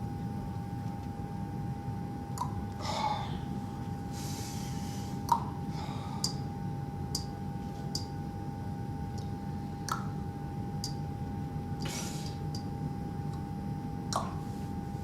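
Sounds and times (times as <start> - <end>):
steady low hum: 0.0 - 15.0
thin steady whine: 0.0 - 15.0.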